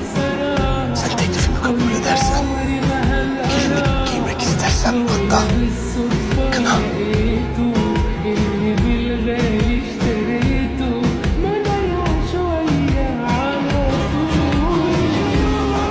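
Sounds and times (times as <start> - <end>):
pop-rock song with singing: 0.0 - 15.9.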